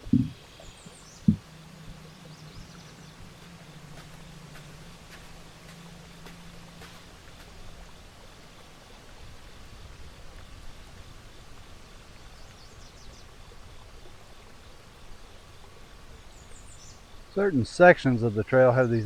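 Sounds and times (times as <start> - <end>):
low hum: 0.0 - 7.4
steady rushing hiss: 0.0 - 19.0.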